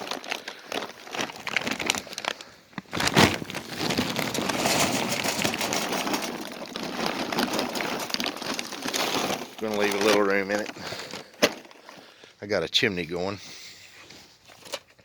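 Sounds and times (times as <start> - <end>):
charcoal clattering into metal basket: 3.0 - 11.8.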